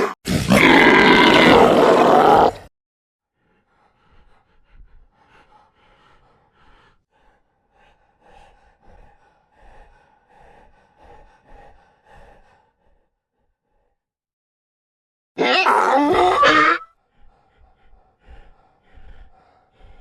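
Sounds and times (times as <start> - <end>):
breathy creature gasps: 3.4 - 13.1, 15.4 - 20.0.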